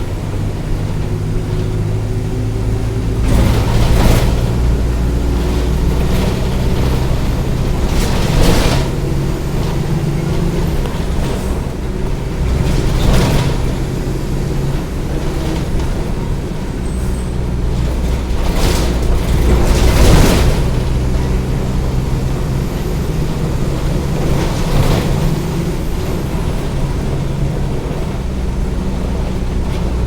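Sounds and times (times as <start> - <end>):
bus diesel engine drone: 0.0 - 30.0.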